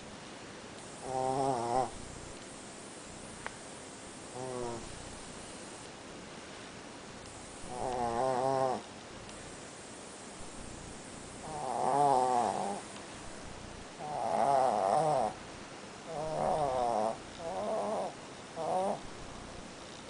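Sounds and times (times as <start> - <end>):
person snoring: 1.0 - 2.0, 4.3 - 5.0, 7.6 - 8.8, 11.4 - 12.9, 14.0 - 15.4, 16.1 - 19.2.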